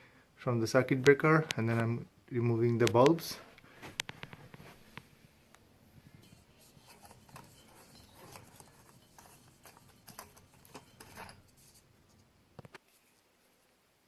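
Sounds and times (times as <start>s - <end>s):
light bulbs clicking and rubbing: 6.1s - 11.9s.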